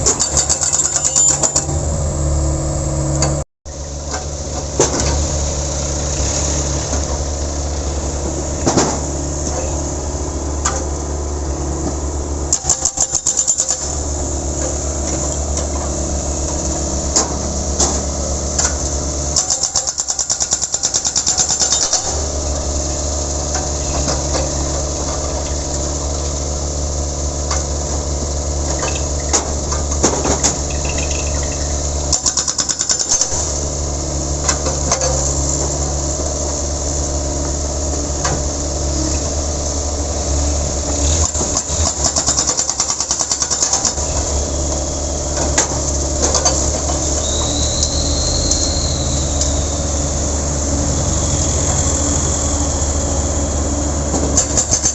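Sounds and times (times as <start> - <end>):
hydraulic breaker hammering: 0.0 - 1.9, 11.9 - 22.4, 27.4 - 39.4, 40.7 - 54.9
diesel engine running: 0.0 - 54.9.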